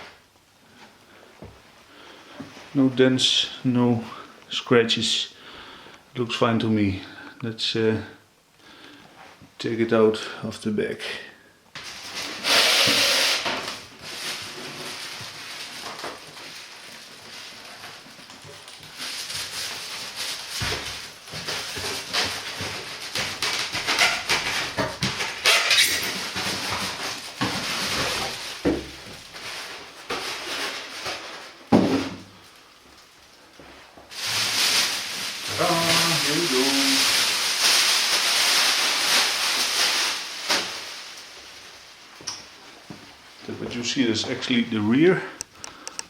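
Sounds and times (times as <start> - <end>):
plastic bag crinkling: 11.8 - 46.0.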